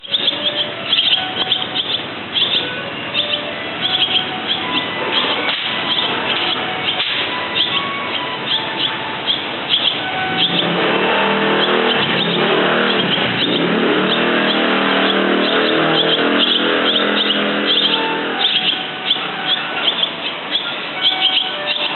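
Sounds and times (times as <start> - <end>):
swallows twittering: 0.0 - 21.9
vehicle engine running: 0.0 - 21.9.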